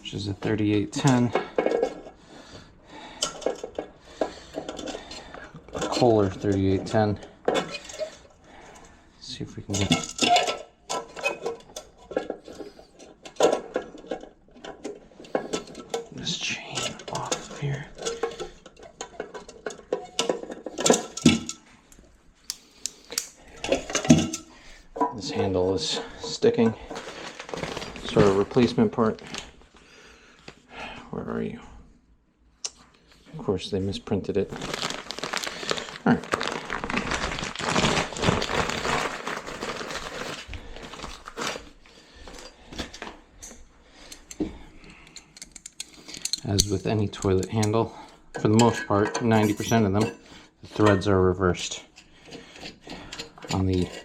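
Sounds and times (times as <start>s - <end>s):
plastic packaging crinkling: 26.8s - 29.6s, 34.4s - 43.0s.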